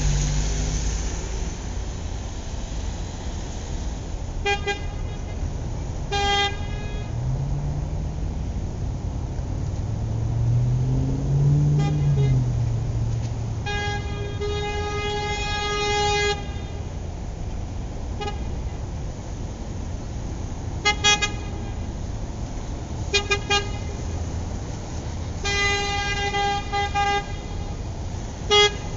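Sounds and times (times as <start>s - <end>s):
car horn blasts: 4.4s - 5.5s, 6.1s - 7.3s, 11.6s - 16.9s, 18.2s - 18.8s, 20.8s - 21.9s, 23.0s - 24.1s, 25.4s - 27.8s, 28.4s - 28.9s.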